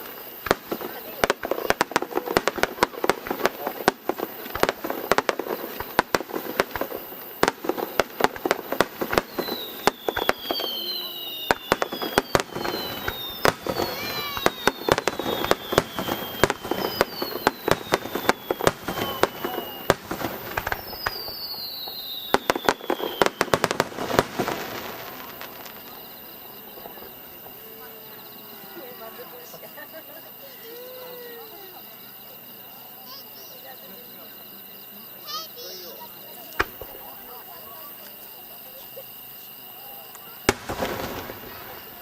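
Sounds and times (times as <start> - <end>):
fireworks bangs and crackles: 0.0 - 42.0
high falling whistle: 9.2 - 27.0.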